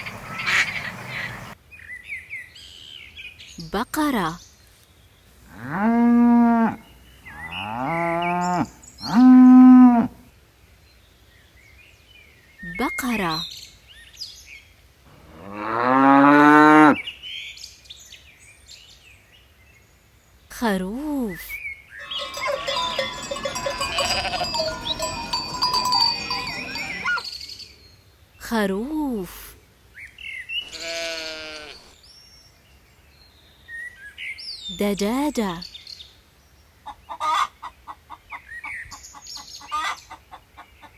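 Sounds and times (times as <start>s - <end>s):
birds chirping: 0.0s - 1.6s, 15.1s - 17.1s, 21.2s - 27.2s
cow mooing: 15.1s - 17.0s, 22.0s - 27.2s, 30.7s - 31.9s
sheep bells ringing: 22.0s - 27.2s
sheep bleating: 22.0s - 27.2s, 30.6s - 32.0s.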